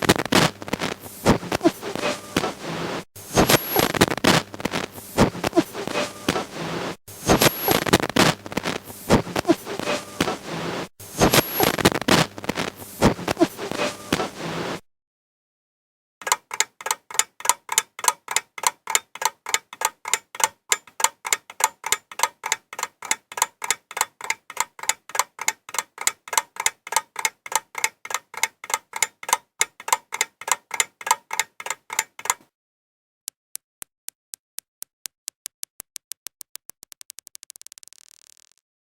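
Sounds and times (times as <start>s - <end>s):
irregular clicking and crackling: 0.0s - 2.6s, 3.4s - 6.5s, 7.4s - 10.4s, 11.3s - 14.4s, 16.2s - 32.4s, 33.8s - 38.6s
steady mechanical ticking: 16.2s - 32.4s.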